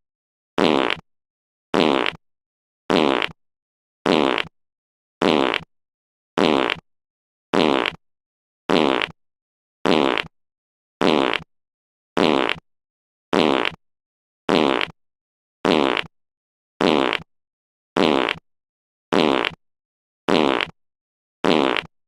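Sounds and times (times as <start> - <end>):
sputtering fart: 0.6 - 1.0, 1.7 - 2.2, 2.9 - 3.4, 4.0 - 4.5, 5.2 - 5.7, 6.4 - 6.8, 7.5 - 8.0, 8.7 - 9.2, 9.8 - 10.3, 11.0 - 11.5, 12.2 - 12.6, 13.3 - 13.8, 14.5 - 15.0, 15.6 - 16.1, 16.8 - 17.3, 18.0 - 18.4, 19.1 - 19.6, 20.3 - 20.8, 21.4 - 21.9.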